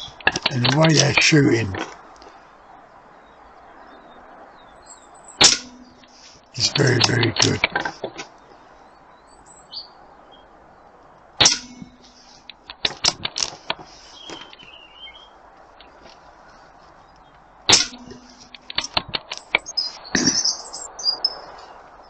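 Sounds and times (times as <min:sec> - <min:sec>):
bird chirping faintly: 0:00.0 - 0:01.7, 0:02.6 - 0:22.0
air gun shots: 0:05.4 - 0:06.0, 0:11.4 - 0:12.3, 0:17.7 - 0:18.9.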